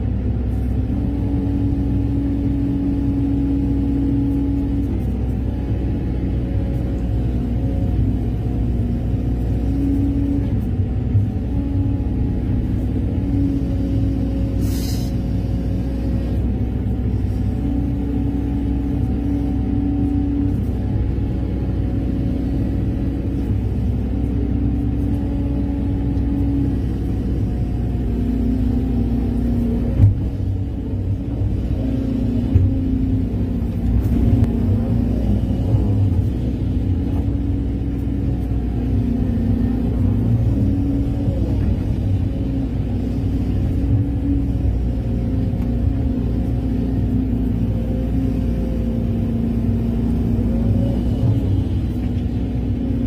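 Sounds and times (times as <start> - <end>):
excavator diesel engine: 0.0 - 53.0
hydraulic hiss: 14.6 - 15.1.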